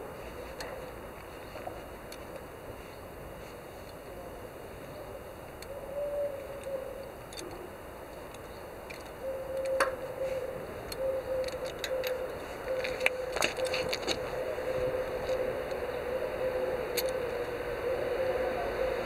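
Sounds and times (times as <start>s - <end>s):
faint steady hum: 0.0s - 19.0s
wrench metallic clicks: 6.6s - 14.2s, 16.9s - 17.5s.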